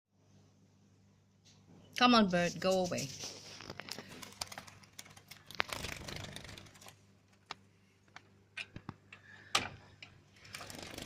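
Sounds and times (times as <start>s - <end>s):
bird fluttering against a screen: 2.4s - 7.5s.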